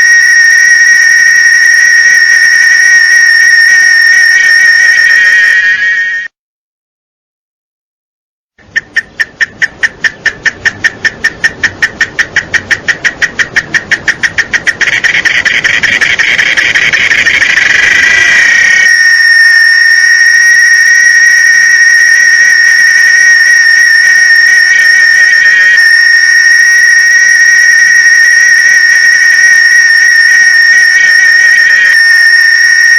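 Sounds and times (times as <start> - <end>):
cicada buzzing: 9.0 - 32.9.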